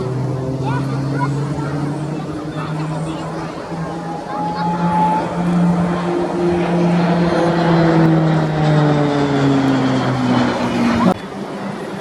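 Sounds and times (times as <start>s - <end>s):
propeller aircraft flying past: 0.0s - 12.0s.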